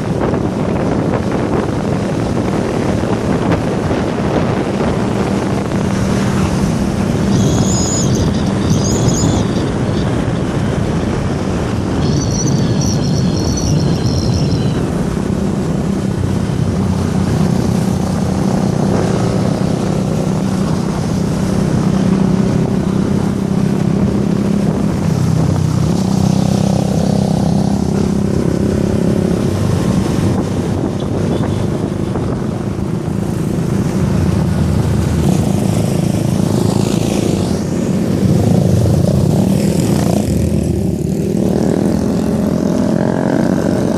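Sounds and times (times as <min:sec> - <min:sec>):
vehicle engine and road noise: 0:00.0 - 0:43.9
high chirping: 0:12.0 - 0:14.9.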